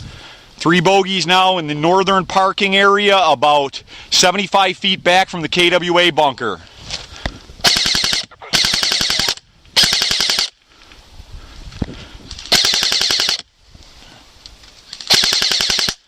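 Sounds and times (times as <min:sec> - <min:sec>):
airsoft guns firing bursts: 0:07.6 - 0:10.5, 0:12.5 - 0:13.4, 0:15.1 - 0:16.0.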